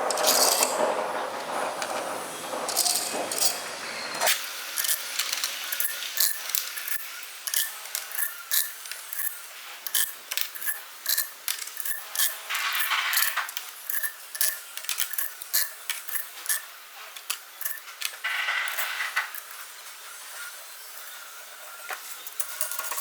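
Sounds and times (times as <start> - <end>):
metal clinks and scrapes: 0.0 - 1.0, 2.6 - 19.6.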